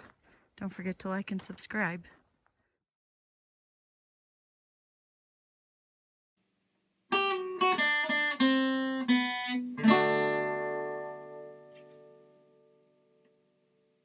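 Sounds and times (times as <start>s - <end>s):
acoustic guitar plucking and strumming: 7.1s - 12.9s.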